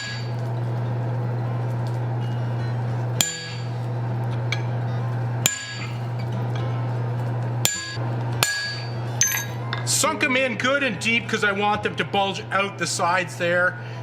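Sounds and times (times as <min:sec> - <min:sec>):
steady low hum: 0:00.0 - 0:14.0
hammer blows on steel: 0:03.2 - 0:03.8.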